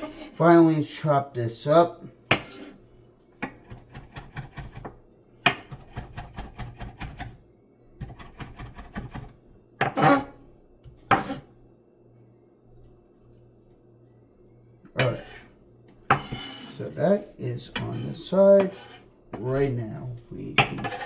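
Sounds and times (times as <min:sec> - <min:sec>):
knife chopping on cutting board: 0:02.3 - 0:02.7, 0:03.4 - 0:07.4, 0:08.0 - 0:10.3, 0:11.1 - 0:11.4, 0:16.1 - 0:16.5, 0:20.6 - 0:21.0.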